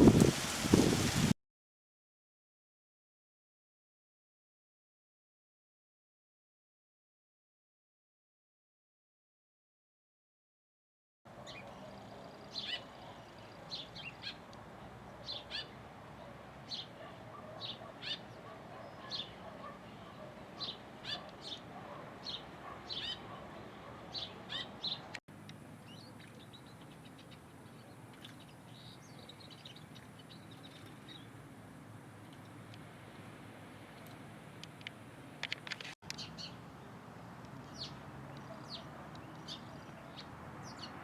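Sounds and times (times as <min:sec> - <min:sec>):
small birds chirping: 0:11.3 - 0:31.5, 0:33.9 - 0:41.0.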